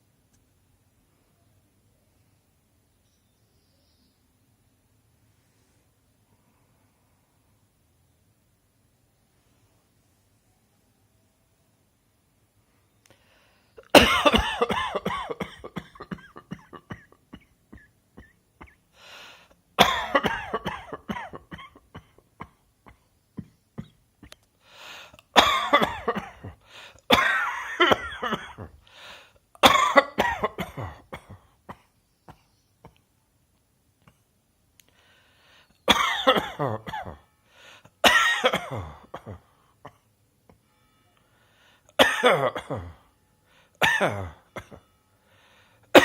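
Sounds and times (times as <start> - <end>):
person coughing: 13.8 - 18.8, 19.8 - 24.4, 25.0 - 32.5, 35.9 - 37.3, 38.0 - 40.1, 41.9 - 43.1, 43.8 - 44.9.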